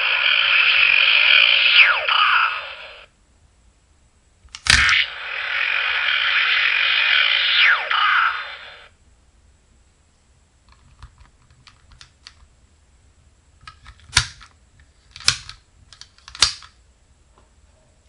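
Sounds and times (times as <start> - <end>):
toy electronic sound effect: 0.0 - 3.1, 4.7 - 8.9.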